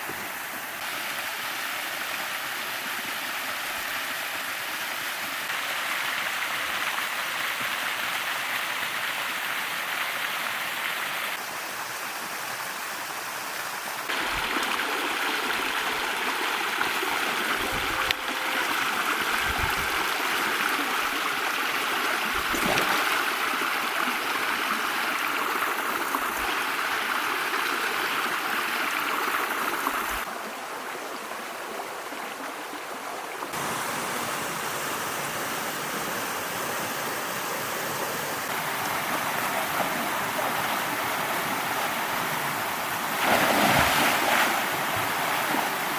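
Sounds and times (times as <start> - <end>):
stream rushing over rocks: 0.0 - 45.9.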